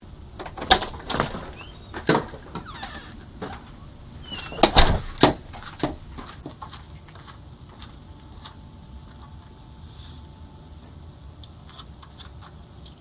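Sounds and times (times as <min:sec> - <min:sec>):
door opening and shutting: 0:00.3 - 0:06.0
short squeaks: 0:01.5 - 0:03.2, 0:04.2 - 0:04.9
footsteps: 0:04.4 - 0:09.5.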